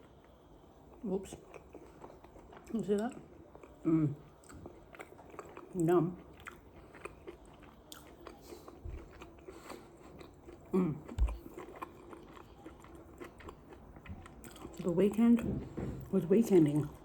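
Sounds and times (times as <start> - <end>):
person chewing food: 0.0 - 14.9
wet mouth clicks: 11.1 - 11.4
low thumps: 11.2 - 11.4.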